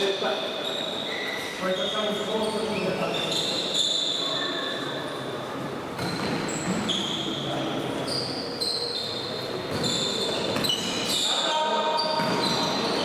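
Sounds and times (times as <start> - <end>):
sports hall background noise: 0.0 - 13.0
ball bouncing: 9.7 - 10.8, 12.1 - 13.0.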